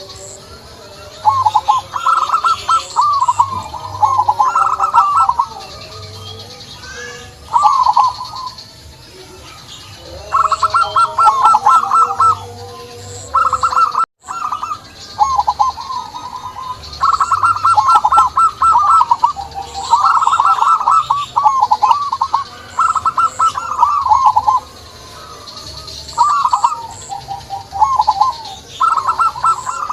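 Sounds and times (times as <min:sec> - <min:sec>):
dove cooing: 0:00.0 - 0:08.6, 0:09.2 - 0:29.9.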